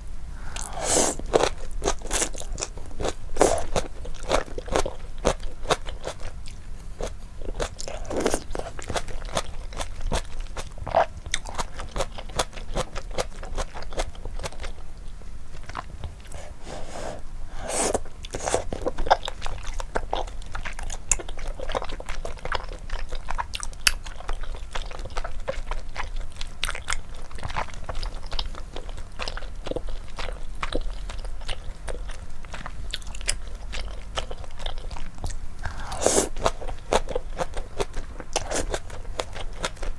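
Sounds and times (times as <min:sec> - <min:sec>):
chewing noodles: 0:00.4 - 0:14.9, 0:15.6 - 0:39.9
wet mouth clicks: 0:35.6 - 0:36.4.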